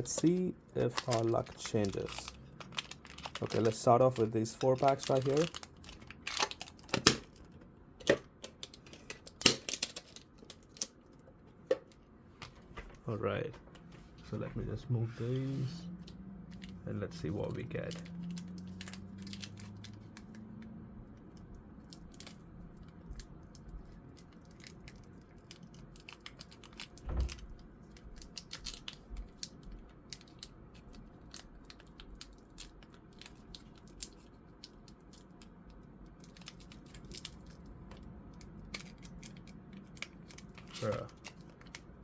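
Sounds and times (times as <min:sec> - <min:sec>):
foil wrappers crinkling: 0:00.0 - 0:07.4, 0:38.6 - 0:41.9.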